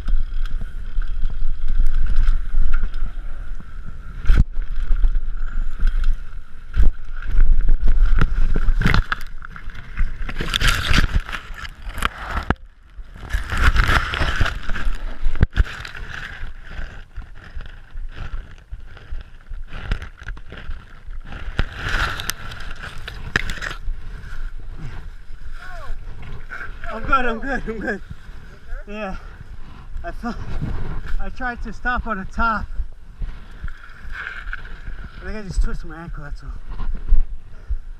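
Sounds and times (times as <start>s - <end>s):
bike tyres on dirt: 0.0s - 37.9s
wind buffeting microphone: 20.6s - 37.9s.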